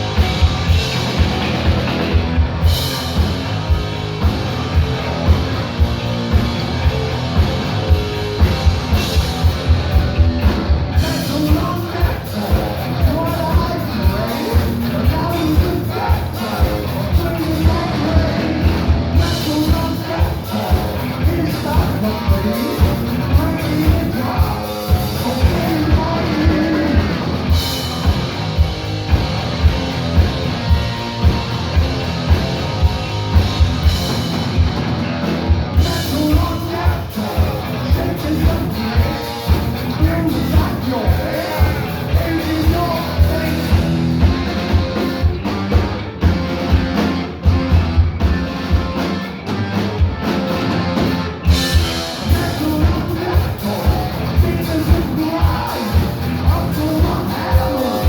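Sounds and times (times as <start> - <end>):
bass guitar: 0.0 - 58.0
distorted electric guitars: 0.0 - 58.0
drum kit beat: 0.0 - 58.0
person singing: 10.9 - 27.6, 35.8 - 45.4, 51.5 - 58.0.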